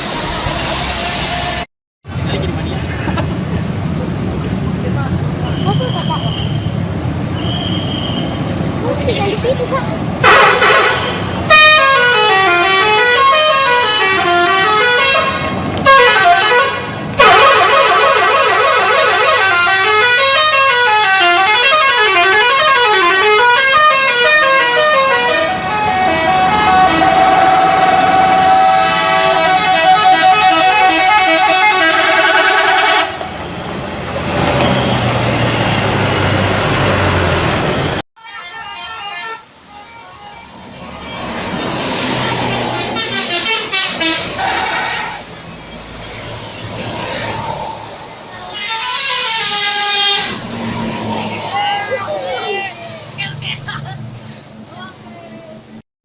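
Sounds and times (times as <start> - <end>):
multi-tone air horns melody: 10.2 - 33.3, 38.2 - 45.3, 48.5 - 51.4.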